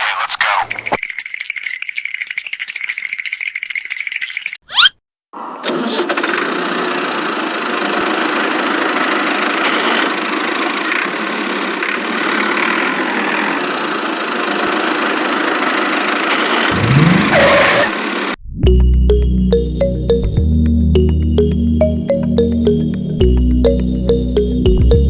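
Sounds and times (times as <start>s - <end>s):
small model motor running: 6.8s - 18.4s.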